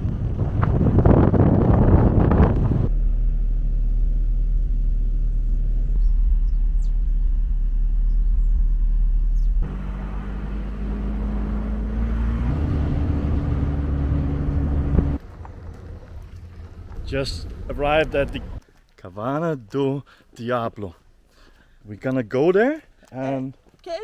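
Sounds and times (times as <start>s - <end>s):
vehicle engine: 0.0s - 18.6s
road rumble: 0.0s - 24.0s.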